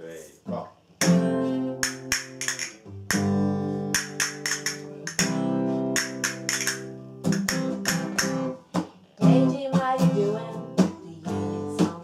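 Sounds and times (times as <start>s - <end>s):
guitar strumming chords: 1.0s - 12.0s.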